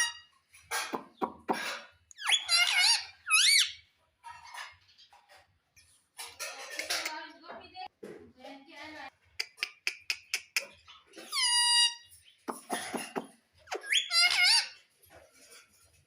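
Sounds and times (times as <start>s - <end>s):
parrot harsh chatter: 0.0s - 3.8s, 9.4s - 14.9s
parrot babbling: 2.2s - 3.8s, 12.6s - 14.8s.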